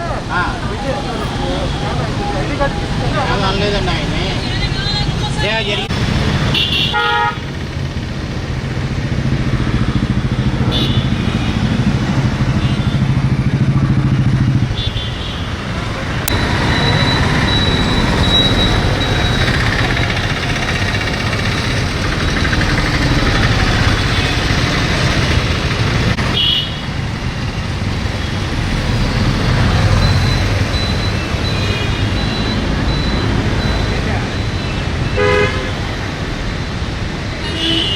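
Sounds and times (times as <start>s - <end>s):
engine hum: 0.0s - 37.7s
traffic passing: 0.0s - 37.9s
car horn toots: 6.5s - 7.5s, 34.6s - 35.8s.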